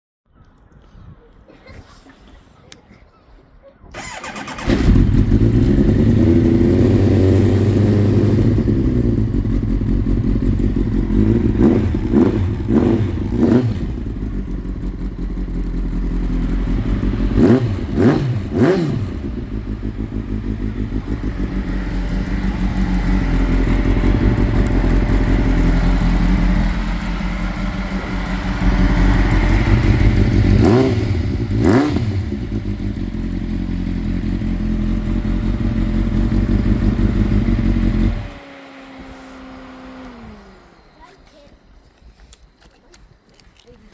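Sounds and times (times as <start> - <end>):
motorcycle engine throttle blips: 4.0 - 42.4.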